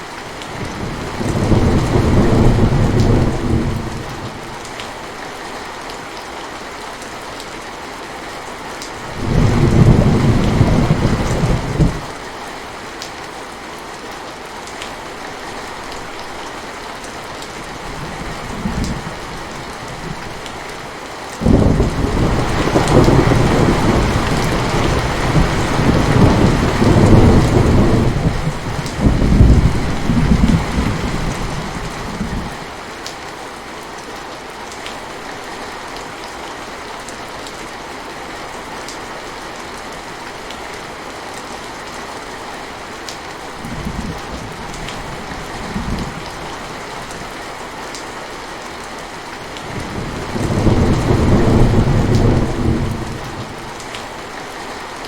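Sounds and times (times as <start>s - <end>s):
steady rain falling: 0.0s - 55.0s
thunder rumbling: 0.6s - 4.3s, 9.1s - 12.1s, 21.4s - 32.6s, 49.7s - 53.9s.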